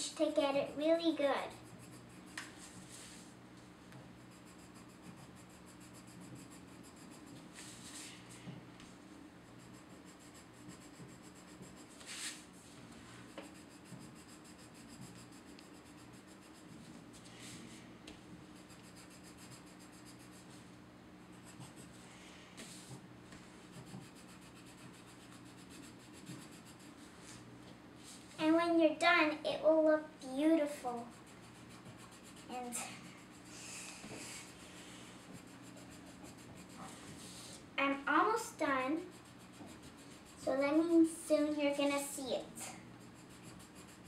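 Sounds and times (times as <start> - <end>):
pencil crayon scratching on paper: 0.3 - 2.5, 4.2 - 8.1, 9.4 - 12.4, 13.3 - 17.3, 18.5 - 20.5, 21.3 - 22.0, 23.6 - 27.0, 30.4 - 44.0.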